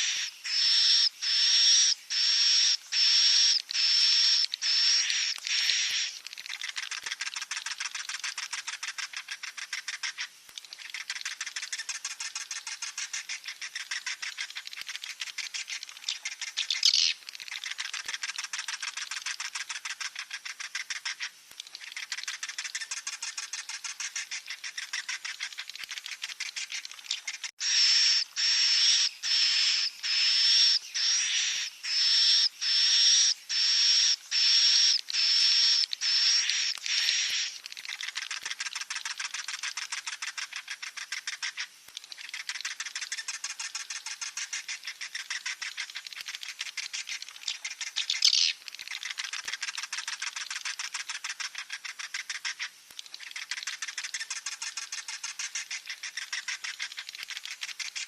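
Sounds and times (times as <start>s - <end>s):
bird chicks high calls: 0.0s - 37.6s
chicks buzzing chatter: 27.1s - 37.6s.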